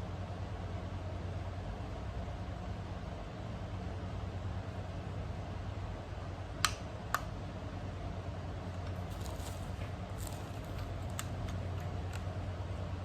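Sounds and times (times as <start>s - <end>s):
rustling: 9.0s - 11.3s.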